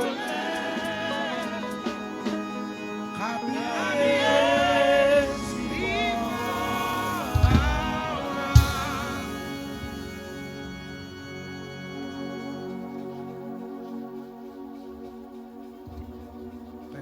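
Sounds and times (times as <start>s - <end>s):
person singing gospel: 0.0s - 10.7s
sustained keyboard chords: 0.0s - 17.0s
low thumps: 4.6s - 11.2s.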